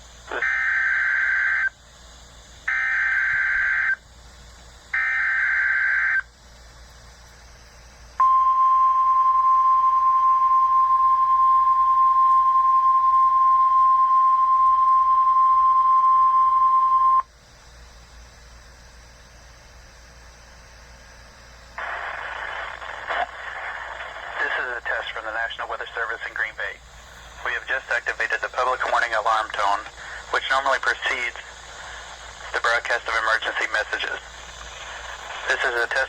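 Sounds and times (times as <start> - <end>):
steady warning alarm tone: 0.4 - 1.8, 2.6 - 4.1, 4.9 - 6.3, 8.2 - 17.3.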